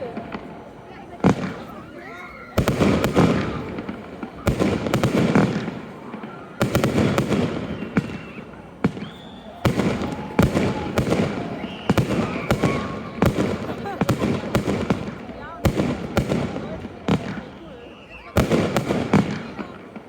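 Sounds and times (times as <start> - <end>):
fireworks bursting with bangs: 0.0 - 20.0.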